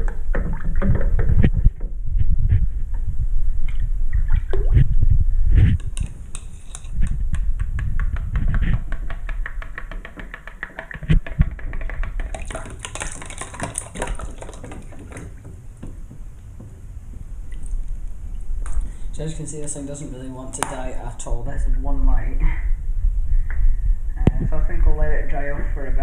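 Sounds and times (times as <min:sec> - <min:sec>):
water sounds: 0:10.6 - 0:18.9.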